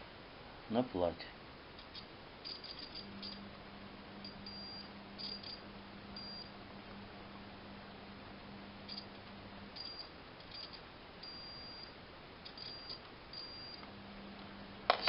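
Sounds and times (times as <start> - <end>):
multimeter continuity beeps: 2.4 - 3.4, 4.2 - 5.6, 6.2 - 6.5, 9.7 - 13.8.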